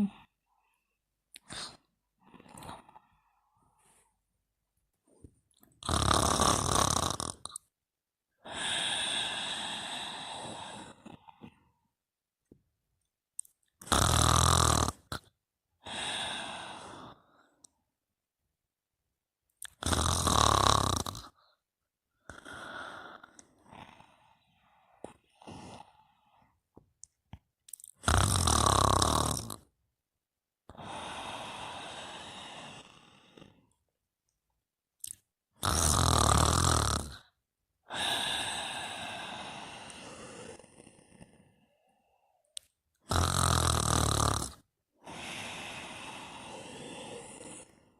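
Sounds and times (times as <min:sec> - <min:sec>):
deep snoring inhales: 0:05.8 - 0:07.6, 0:08.4 - 0:11.8, 0:13.8 - 0:17.6, 0:19.8 - 0:21.6, 0:22.2 - 0:26.6, 0:28.0 - 0:29.7, 0:30.7 - 0:33.8, 0:35.6 - 0:47.9
long breath out: 0:08.4 - 0:11.7, 0:15.8 - 0:17.6, 0:30.7 - 0:33.7, 0:37.9 - 0:42.4, 0:45.0 - 0:47.9
breathy exhale: 0:37.9 - 0:42.0, 0:45.0 - 0:47.9.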